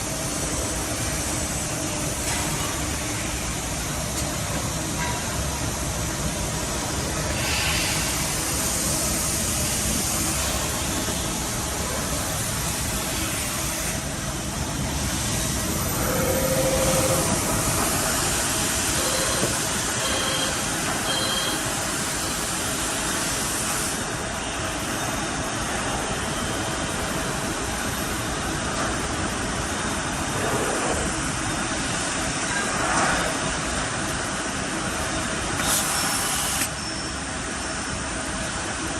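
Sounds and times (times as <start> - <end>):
factory machinery din: 0.0 - 37.4
short beeps: 19.0 - 21.6.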